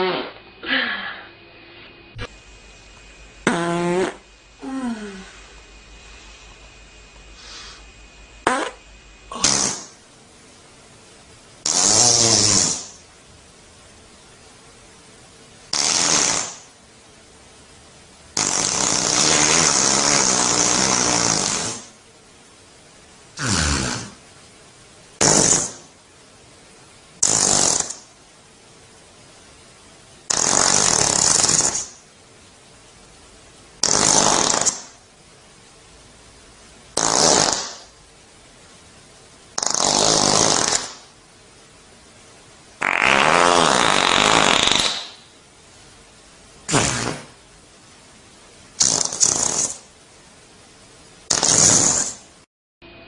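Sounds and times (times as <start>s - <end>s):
farts: 0.0s - 0.4s, 3.4s - 5.3s, 8.4s - 10.0s, 11.6s - 13.0s, 15.7s - 16.8s, 18.4s - 22.0s, 23.4s - 24.2s, 25.2s - 25.9s, 27.2s - 28.1s, 30.3s - 32.0s, 33.8s - 35.0s, 36.9s - 38.0s, 39.6s - 41.1s, 42.8s - 45.3s, 46.7s - 47.4s, 48.8s - 49.9s, 51.3s - 52.3s.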